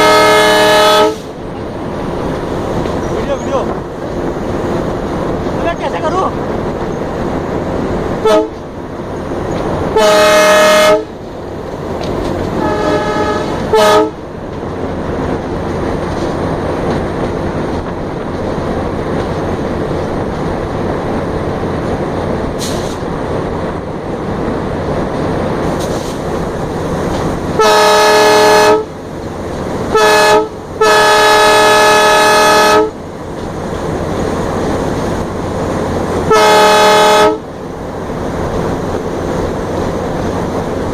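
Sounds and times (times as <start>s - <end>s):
locomotive horn blasts: 0.0s - 1.3s, 8.2s - 8.6s, 9.9s - 11.1s, 12.6s - 14.2s, 27.6s - 28.9s, 29.9s - 33.0s, 36.3s - 37.4s
locomotive engine running: 0.0s - 40.9s.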